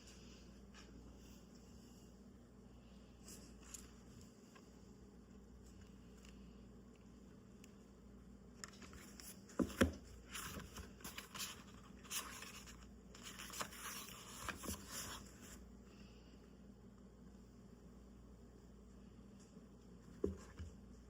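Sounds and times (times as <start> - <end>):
pages rustling and sliding: 8.6 - 15.6
soft book thumps: 9.5 - 10.8, 20.2 - 20.7.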